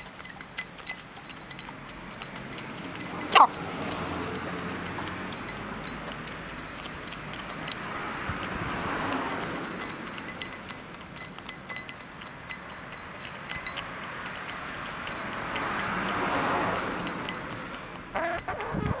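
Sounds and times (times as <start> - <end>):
chickens pecking: 0.0 - 19.0
hen clucking: 3.0 - 5.2, 18.1 - 19.0.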